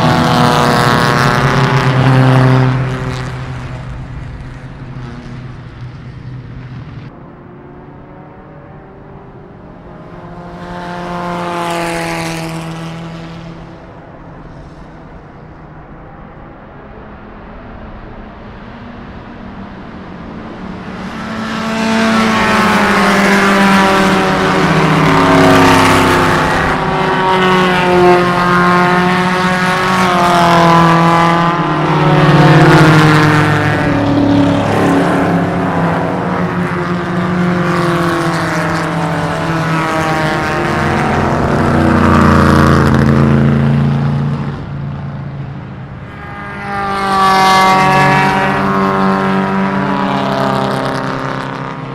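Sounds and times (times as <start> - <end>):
race car engines: 0.0 - 51.9
race car passing by: 0.0 - 51.9.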